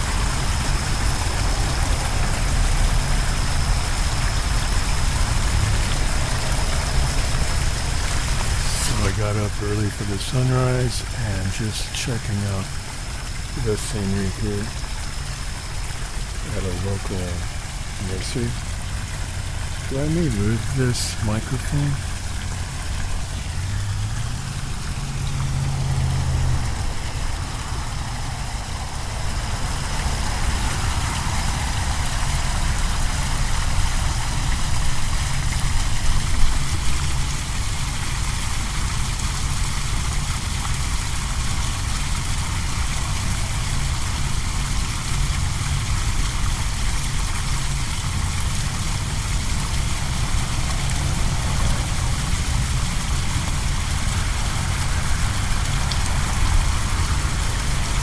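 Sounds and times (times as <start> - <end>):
steady low rumble: 0.0 - 38.5
waterfall splashing into pond: 0.0 - 58.0.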